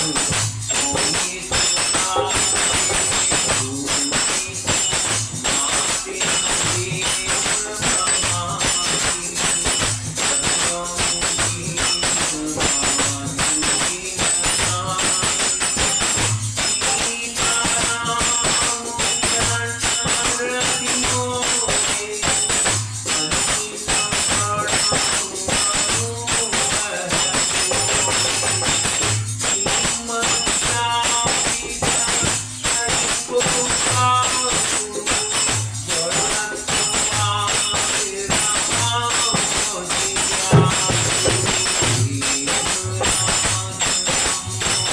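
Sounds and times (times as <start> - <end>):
jingling percussion: 0.0 - 44.9
low drum beat: 40.4 - 43.3.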